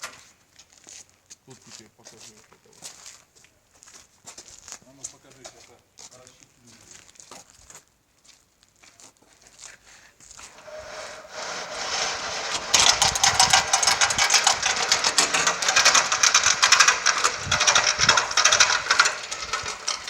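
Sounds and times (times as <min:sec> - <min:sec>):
industrial sewing machine stitching: 0:10.6 - 0:20.0.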